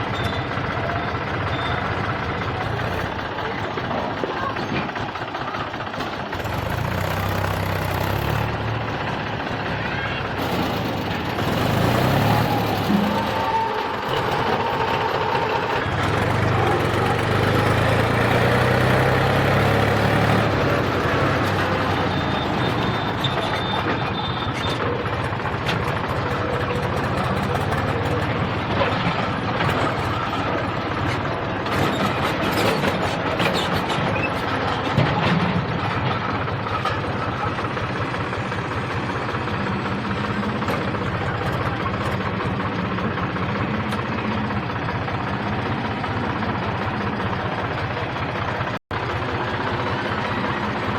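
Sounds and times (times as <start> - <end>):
heavy diesel machinery running: 0.0 - 50.9
sharp clatters and knocks: 10.4 - 44.9.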